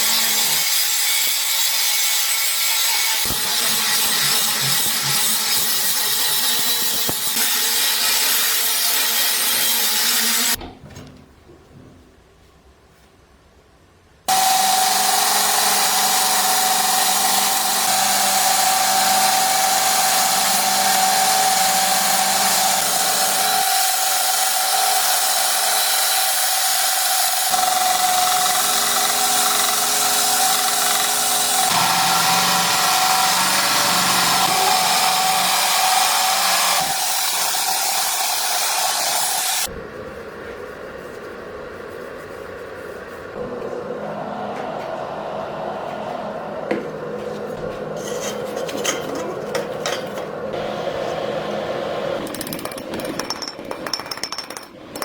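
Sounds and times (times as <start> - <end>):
electric power tool whining: 27.5 - 37.5.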